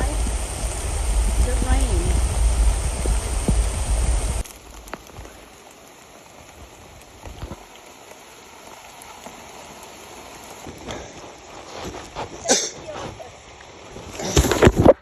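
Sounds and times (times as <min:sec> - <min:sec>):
loud low rumble: 0:00.0 - 0:04.4
rain falling: 0:00.0 - 0:15.0.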